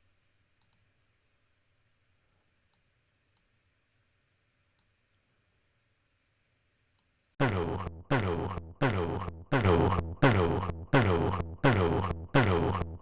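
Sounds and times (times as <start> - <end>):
computer mouse clicks: 0.6 - 0.9, 2.7 - 3.5.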